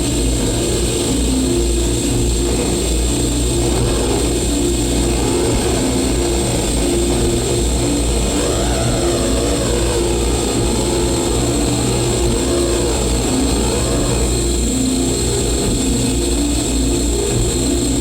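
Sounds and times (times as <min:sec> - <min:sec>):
distorted electronic noise music: 0:00.0 - 0:18.0
heavy low rumble: 0:00.0 - 0:18.0
pitch sweeps: 0:04.0 - 0:15.6.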